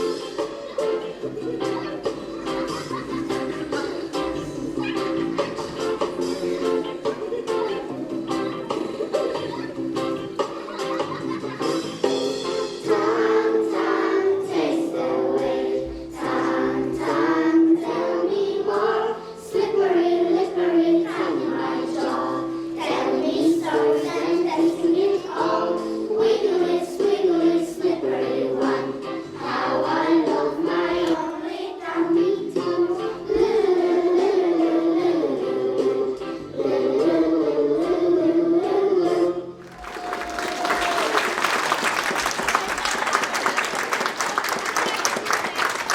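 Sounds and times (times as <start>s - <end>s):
instrumental backing music: 0.0s - 45.9s
children singing in unison: 12.8s - 39.4s.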